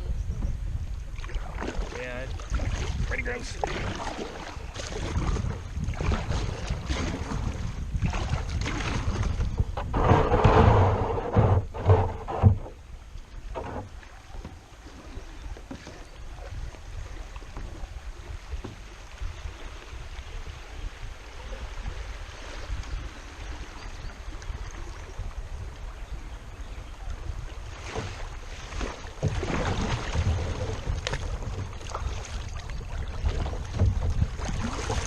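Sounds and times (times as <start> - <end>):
wind buffeting microphone: 0.0 - 35.0
kayak knocks: 1.2 - 19.8, 26.6 - 35.0.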